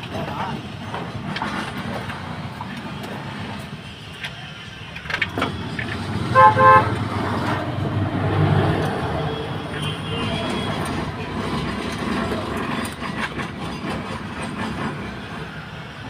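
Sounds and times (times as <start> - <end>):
engine and traffic noise: 0.0 - 16.0
vehicle horn toots: 6.3 - 7.0, 9.2 - 10.9.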